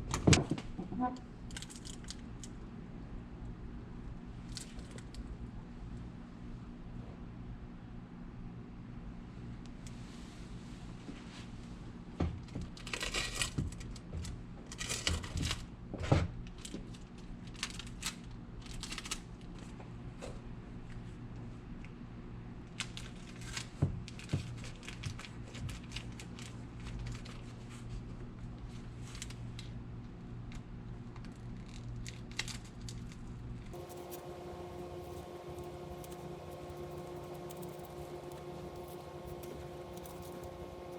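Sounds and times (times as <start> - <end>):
rustling and scraping of material: 9.9 - 11.9, 31.5 - 40.9
steady low hum: 33.4 - 40.9.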